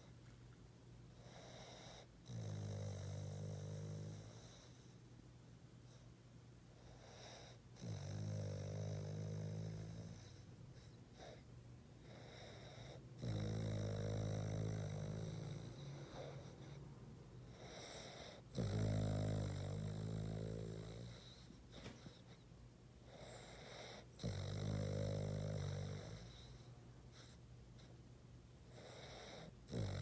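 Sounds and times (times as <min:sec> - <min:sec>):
dog breathing quietly: 0:01.2 - 0:02.3, 0:15.1 - 0:18.6, 0:20.6 - 0:24.3
dog snoring: 0:01.2 - 0:05.0, 0:06.7 - 0:11.4, 0:12.0 - 0:16.8, 0:17.5 - 0:22.4, 0:23.0 - 0:27.9, 0:28.7 - 0:30.0.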